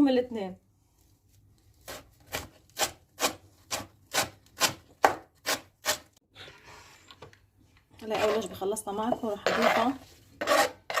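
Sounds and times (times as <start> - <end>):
knife cutting on wooden board: 10.4 - 11.0.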